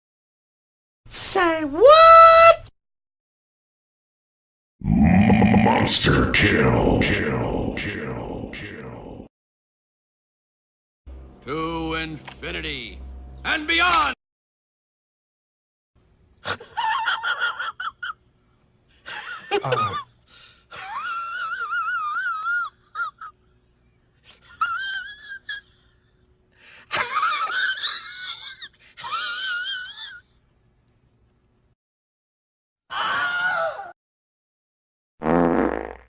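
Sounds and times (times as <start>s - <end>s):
wavering voice-like cries: 32.9s - 33.9s.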